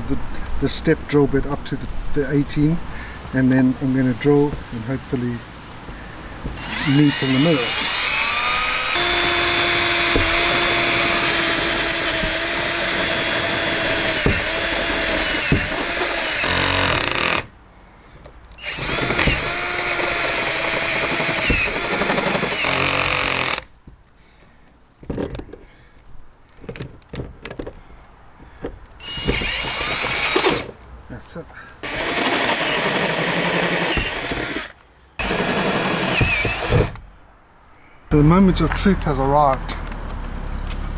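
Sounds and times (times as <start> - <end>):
electric drill cutting sheet metal: 6.6 - 17.5, 18.6 - 23.7, 29.0 - 30.7, 31.8 - 37.0.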